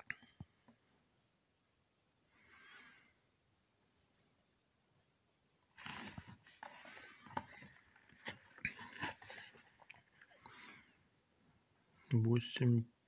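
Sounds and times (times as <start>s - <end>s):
cardboard box rustling: 5.7s - 10.3s.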